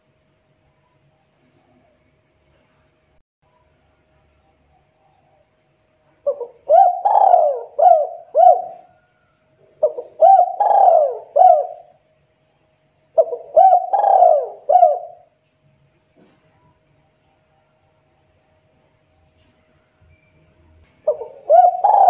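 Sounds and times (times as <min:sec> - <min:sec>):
dove cooing: 0:06.2 - 0:12.0, 0:13.2 - 0:15.3, 0:21.0 - 0:22.0.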